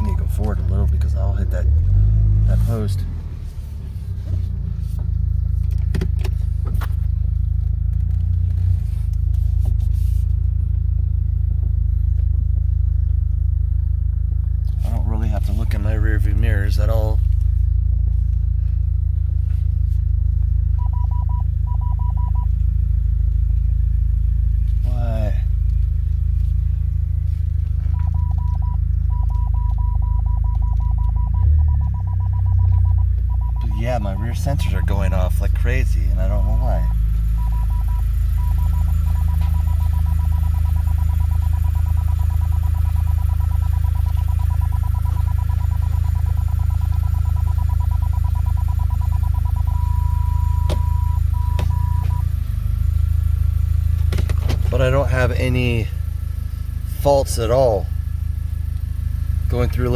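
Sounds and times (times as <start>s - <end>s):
car engine rumbling at low revs: 0.0s - 59.9s
parking sensor beeping rapidly: 20.8s - 22.6s, 27.9s - 52.4s.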